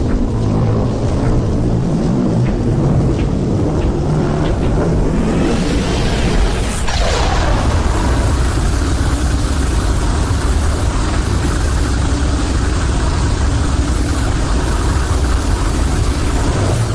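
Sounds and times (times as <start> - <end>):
heavy mechanical rumble: 0.0 - 16.9.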